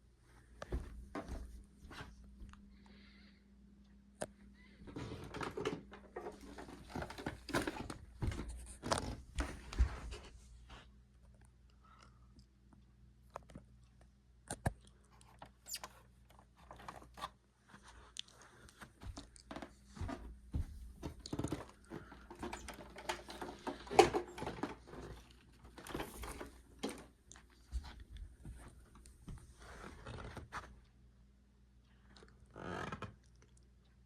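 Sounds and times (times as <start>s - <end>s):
vacuum cleaner being handled: 5.0s - 10.0s, 21.0s - 27.2s.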